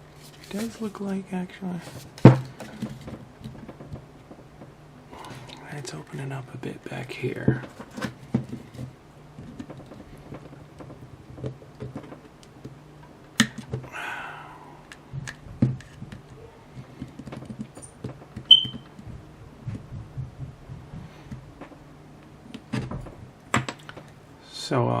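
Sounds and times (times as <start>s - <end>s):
smoke alarm beep: 18.5s - 18.9s.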